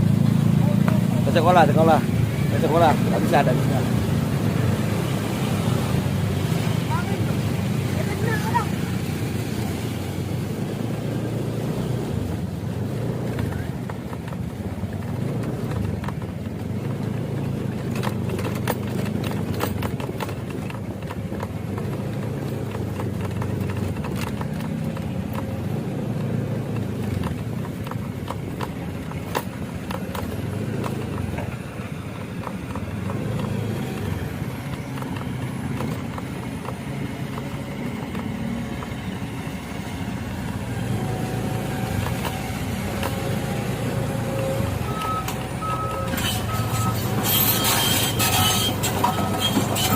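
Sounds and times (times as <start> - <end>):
vehicle engine rumbling: 0.0 - 49.9
sharp clicks and knocks: 12.2 - 49.9.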